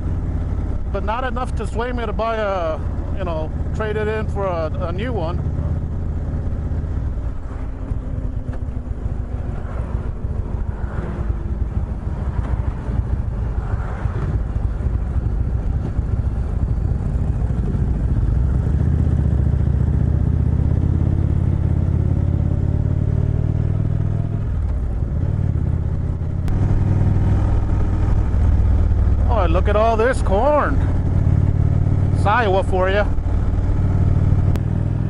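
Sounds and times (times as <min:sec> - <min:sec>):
motorcycle engine running: 0:00.0 - 0:35.0.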